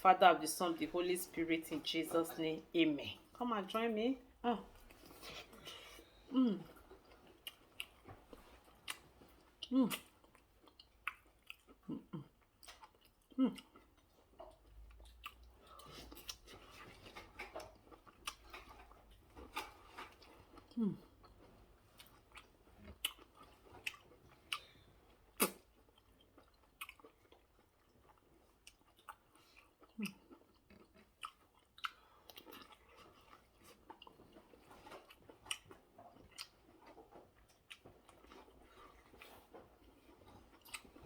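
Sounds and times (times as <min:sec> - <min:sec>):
person biting and chewing: 0:25.3 - 0:41.0.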